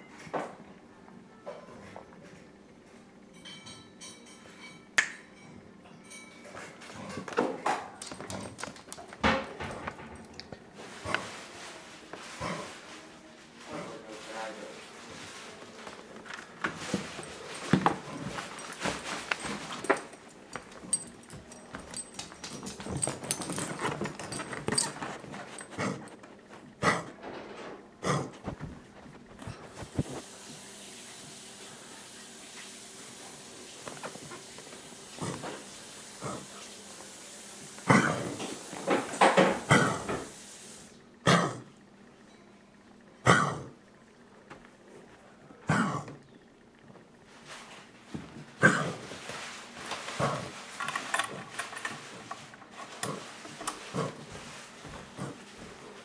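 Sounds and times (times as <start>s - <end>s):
dog coughing: 26.8s - 27.2s, 28.0s - 28.5s, 37.8s - 38.4s, 39.6s - 40.2s, 41.2s - 41.7s, 43.2s - 43.8s, 45.6s - 46.2s, 48.6s - 49.1s.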